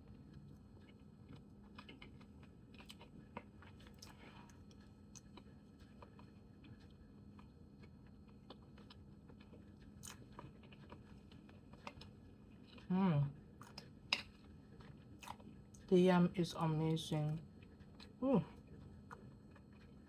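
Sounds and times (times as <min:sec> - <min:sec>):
low steady hum: 0:00.0 - 0:20.0
wet mouth clicks chewing: 0:00.4 - 0:12.9.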